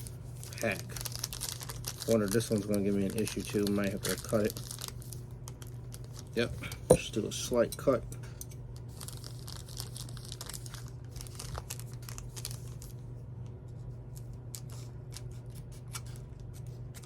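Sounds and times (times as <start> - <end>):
wrapper crinkling and tearing: 0.0 - 6.5, 8.7 - 13.0
steady low hum: 0.0 - 17.0.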